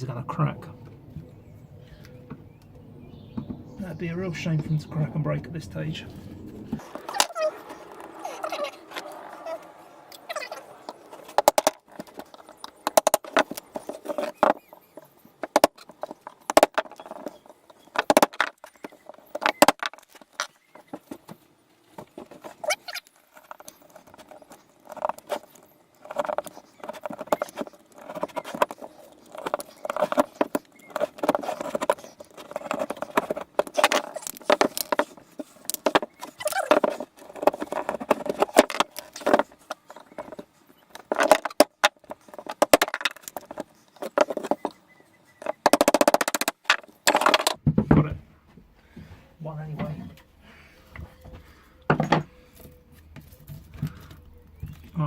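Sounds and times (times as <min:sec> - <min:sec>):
scraping: 0:03.4 - 0:47.6
sharp knocks and cracks: 0:06.7 - 0:44.8, 0:45.4 - 0:48.2.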